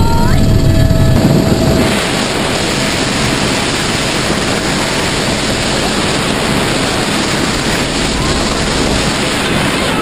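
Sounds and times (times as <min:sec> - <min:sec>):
wind battering the microphone: 0:00.0 - 0:10.0.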